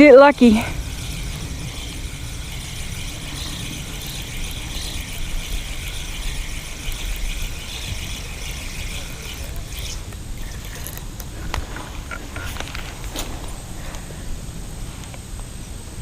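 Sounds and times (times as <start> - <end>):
high pulsing hiss: 0.0 - 16.0
wind rumble on microphone: 0.0 - 16.0.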